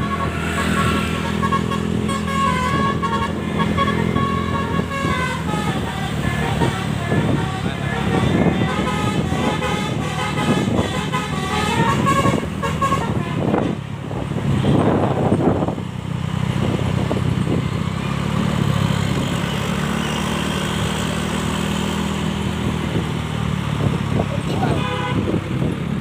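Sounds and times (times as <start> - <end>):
bus musical horn melody: 0.0 - 14.0, 24.6 - 25.4
diesel engine humming: 0.0 - 26.0.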